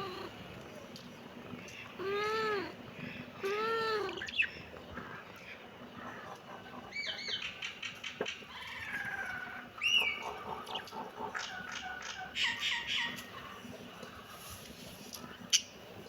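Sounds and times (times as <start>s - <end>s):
kittens meowing: 0.0s - 0.5s, 2.0s - 4.4s.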